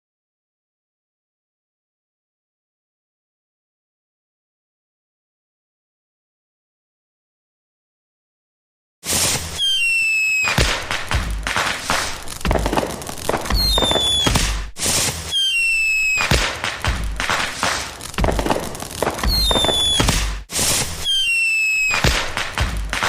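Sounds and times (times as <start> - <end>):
fireworks crackling and popping: 9.0 - 23.0
whistling firework shells: 9.1 - 23.0.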